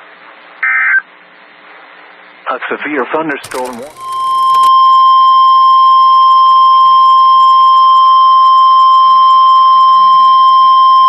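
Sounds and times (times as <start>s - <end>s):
steady alarm tone: 3.5s - 4.8s.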